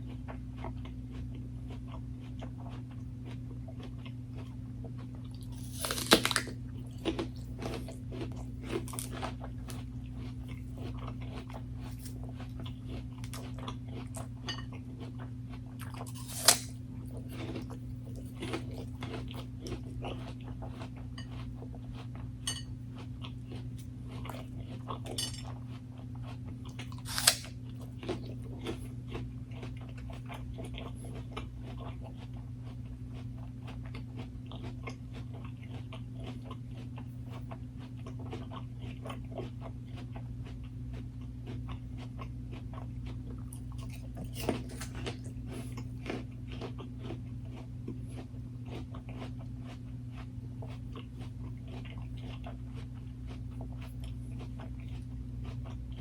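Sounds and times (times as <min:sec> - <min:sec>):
crunching chews: 0:00.0 - 0:56.0
crunchy bites: 0:00.7 - 0:14.4, 0:15.8 - 0:21.0, 0:26.7 - 0:32.8, 0:38.1 - 0:56.0.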